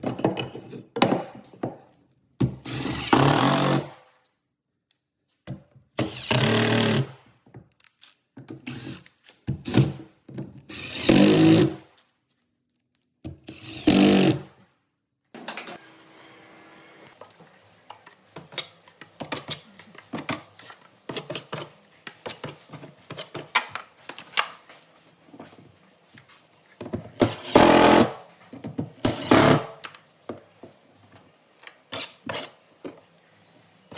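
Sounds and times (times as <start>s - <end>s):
tools scraping on drywall: 10.7s - 11.8s, 26.9s - 28.3s, 29.0s - 29.8s, 31.9s - 33.0s
power tool bursts: 27.2s - 28.2s, 29.0s - 29.8s.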